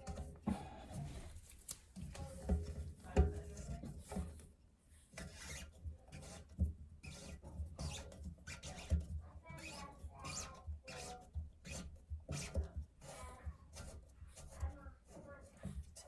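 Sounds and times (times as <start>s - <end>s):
hands rubbing and scraping fittings: 5.0s - 16.0s.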